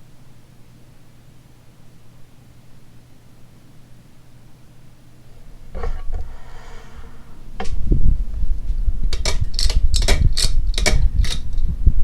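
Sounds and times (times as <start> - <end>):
fan draft buffeting microphone: 5.2 - 12.0.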